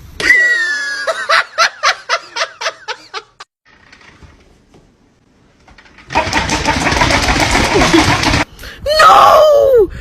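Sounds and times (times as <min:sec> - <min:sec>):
person laughing: 0:00.2 - 0:03.4, 0:06.2 - 0:08.4.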